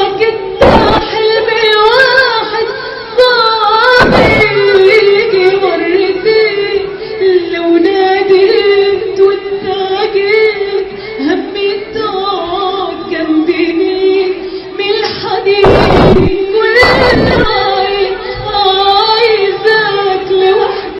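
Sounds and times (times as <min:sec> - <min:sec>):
woman singing: 0:00.0 - 0:20.9
short bursts of noise: 0:00.6 - 0:01.1, 0:04.0 - 0:04.8, 0:15.6 - 0:17.6.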